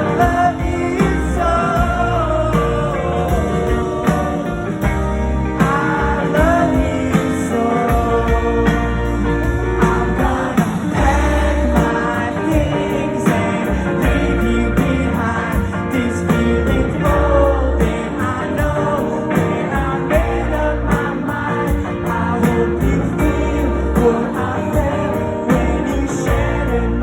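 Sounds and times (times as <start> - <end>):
pop song with sung vocals: 0.0 - 27.0.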